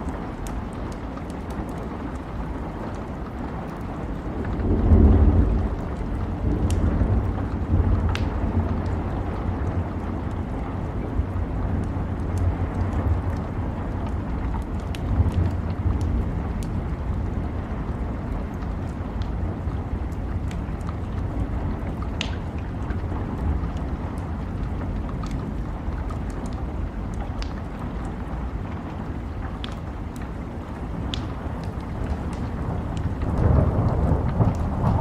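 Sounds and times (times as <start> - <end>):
raindrops tapping: 0.0 - 35.0
steady rain: 0.0 - 35.0
deep rumble: 30.8 - 35.0.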